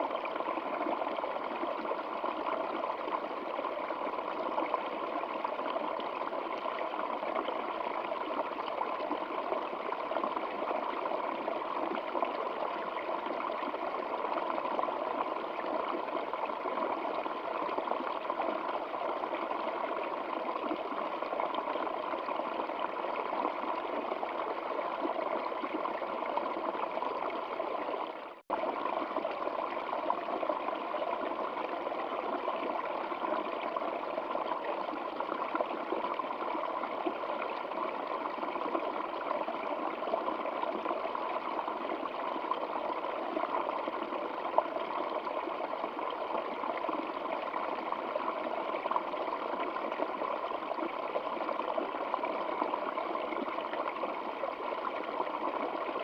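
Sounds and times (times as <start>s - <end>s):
stream water flowing: 0.0s - 56.0s.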